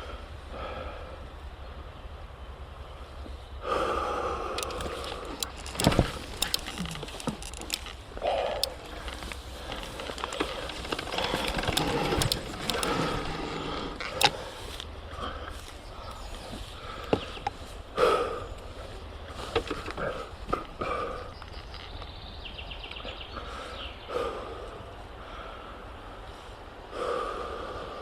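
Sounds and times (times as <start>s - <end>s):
tyres and suspension knocking: 9.7s - 13.5s.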